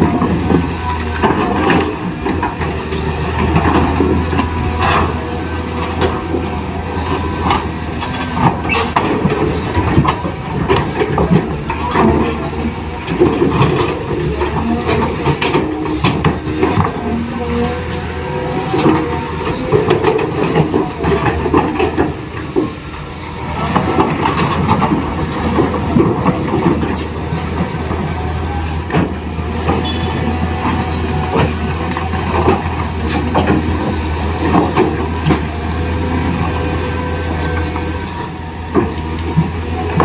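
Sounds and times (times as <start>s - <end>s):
small electric motors humming: 0.0s - 40.0s
plastic gears clicking and rattling: 29.5s - 37.0s.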